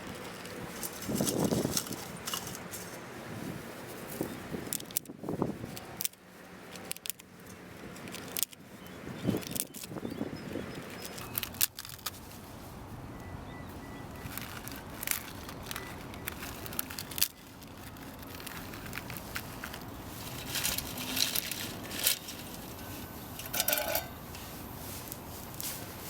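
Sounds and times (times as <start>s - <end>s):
wood fire crackling: 14.2s - 25.6s.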